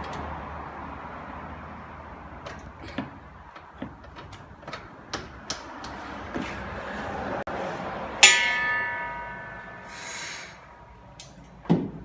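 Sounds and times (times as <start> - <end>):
steady background hum: 1.8 - 11.6
sharp clicks and knocks: 2.4 - 6.5.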